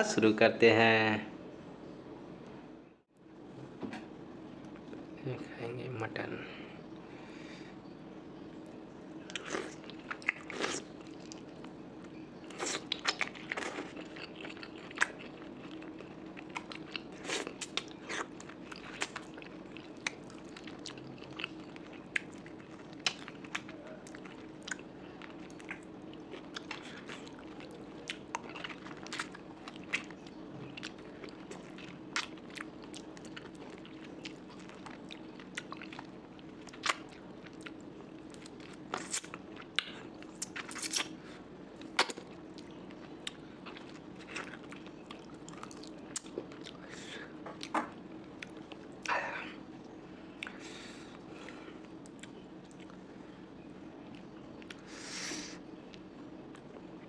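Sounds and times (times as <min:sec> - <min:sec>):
faint steady hum: 0:00.0 - 0:57.0
person chewing: 0:09.2 - 0:41.2, 0:41.8 - 0:49.5.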